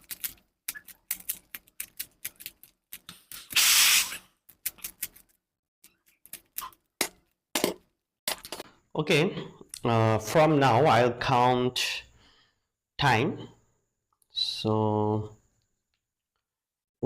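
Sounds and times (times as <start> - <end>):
puzzle cube clicking and rattling: 0.0 - 3.1, 4.5 - 5.4.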